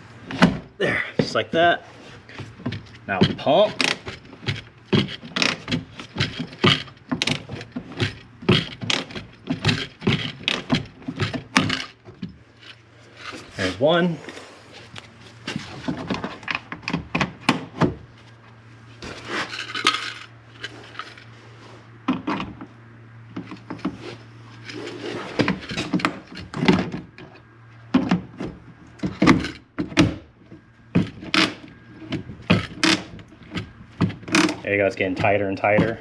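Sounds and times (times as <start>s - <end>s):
short rasp: 13.3s - 16.5s.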